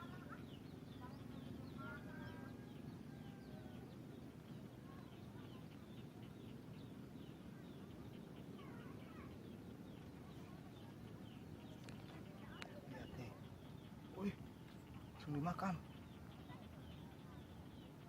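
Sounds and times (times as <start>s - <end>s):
low background rumble: 0.0s - 18.0s
small birds chirping: 0.0s - 18.0s.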